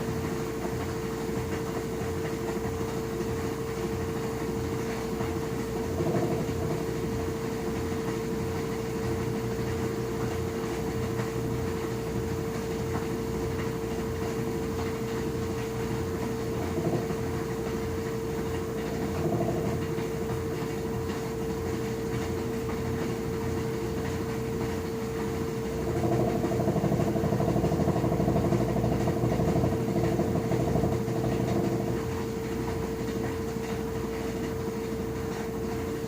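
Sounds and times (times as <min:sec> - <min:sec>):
washing machine hum: 0:00.0 - 0:36.0.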